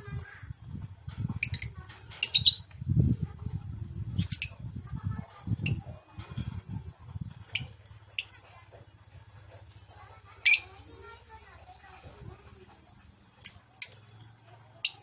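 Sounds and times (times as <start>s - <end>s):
bird chirping: 1.2s - 2.7s, 13.2s - 15.0s.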